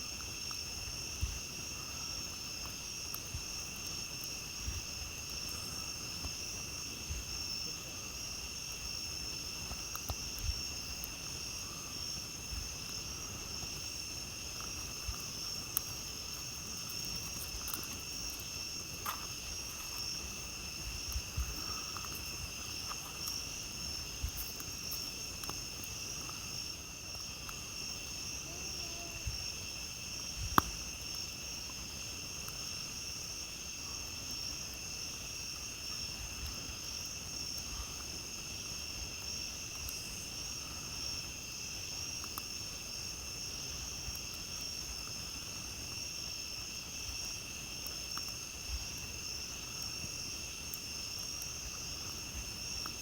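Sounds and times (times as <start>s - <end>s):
campfire crackling and popping: 0.0s - 53.0s
night insects chirping: 0.0s - 53.0s.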